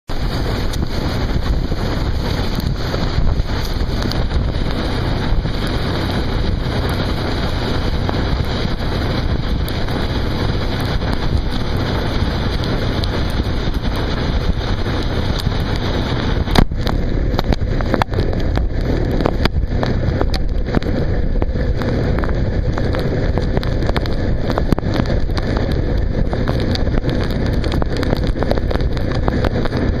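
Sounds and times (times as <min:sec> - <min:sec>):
boat engine hum: 0:00.1 - 0:30.0
rushing water: 0:00.1 - 0:30.0
wind buffeting microphone: 0:00.1 - 0:30.0.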